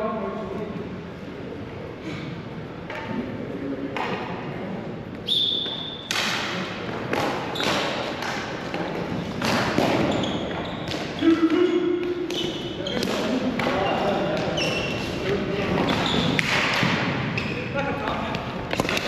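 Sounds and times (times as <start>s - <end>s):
hockey sticks and ball knocking: 5.6s - 17.5s, 18.2s - 19.0s.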